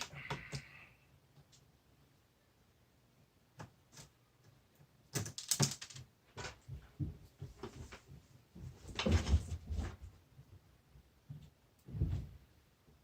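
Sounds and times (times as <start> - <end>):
plastic clicks and clatter: 5.1 - 6.6.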